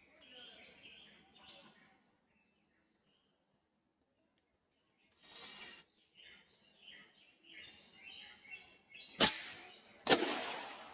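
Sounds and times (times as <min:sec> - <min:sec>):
brief hiss: 0:05.2 - 0:05.8
sharp loud crack: 0:09.2 - 0:10.9.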